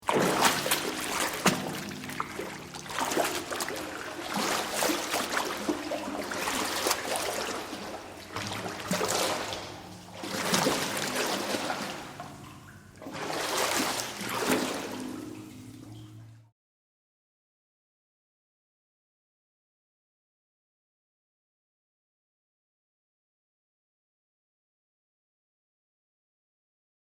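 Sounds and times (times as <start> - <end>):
water sloshing through a pipe: 0.0 - 16.5
water splashing and trickling: 0.0 - 16.5.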